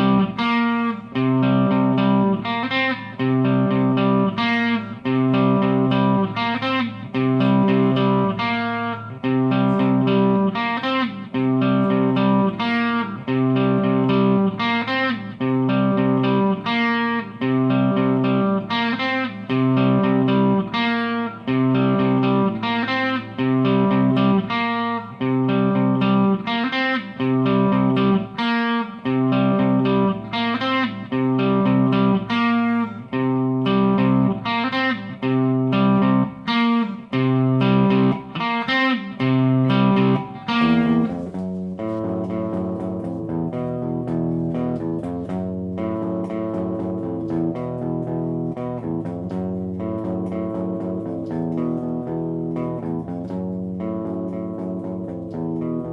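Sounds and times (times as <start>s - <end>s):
electric guitar chord stabs: 0.0s - 55.9s.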